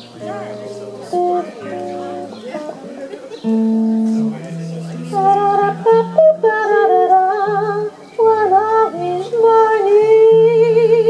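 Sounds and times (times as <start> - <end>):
acoustic guitar: 0.0 - 11.0
woman singing with vibrato: 5.1 - 11.0.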